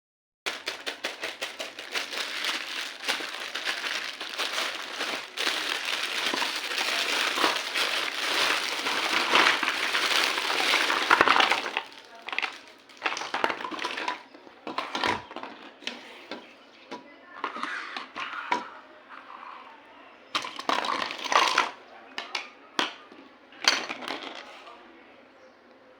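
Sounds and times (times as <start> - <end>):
packaging crackling and rustling: 0.5 - 15.5.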